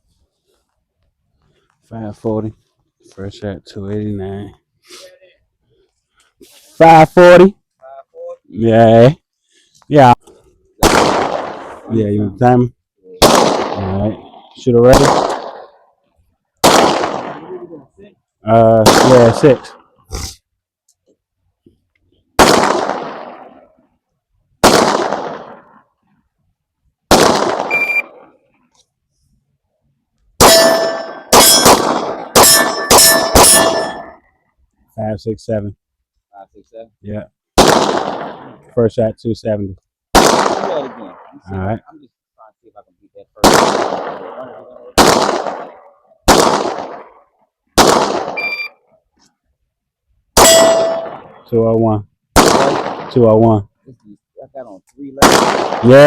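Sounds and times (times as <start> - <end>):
gunshots with long echo: 10.8 - 12.2, 13.2 - 15.8, 16.6 - 17.7, 18.8 - 19.8, 22.4 - 23.8, 24.6 - 25.9, 27.1 - 28.4, 30.4 - 34.2, 37.6 - 38.6, 40.1 - 41.4, 43.4 - 48.5, 50.4 - 51.5, 52.4 - 53.3, 55.2 - 56.0
shot timer beep: 27.7 - 28.1, 30.5 - 31.6, 32.4 - 34.1, 48.4 - 48.8, 50.4 - 51.2
bullet ringing on steel target: 30.4 - 31.8, 32.4 - 34.2, 50.4 - 51.3.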